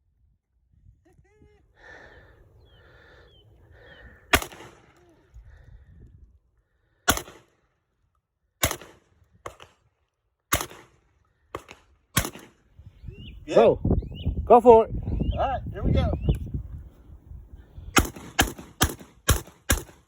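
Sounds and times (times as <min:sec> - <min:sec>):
shotgun shots: 0:04.3 - 0:05.0, 0:07.1 - 0:07.5, 0:08.6 - 0:09.8, 0:10.5 - 0:12.7, 0:17.9 - 0:20.0.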